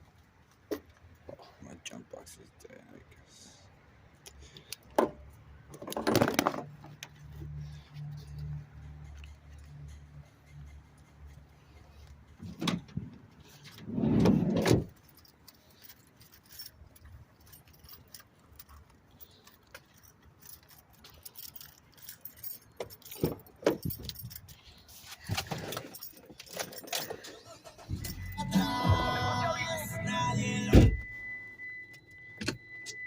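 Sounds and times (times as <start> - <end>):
car keys jangling: 4.2 - 13.8, 14.4 - 28.8
rustling clatter: 5.7 - 28.0.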